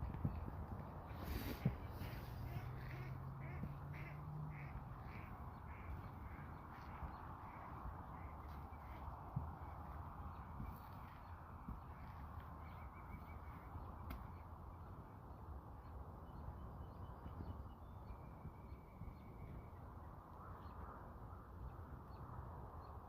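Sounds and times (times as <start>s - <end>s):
low outdoor rumble: 0.0s - 22.9s
faint birds calling: 0.0s - 23.0s.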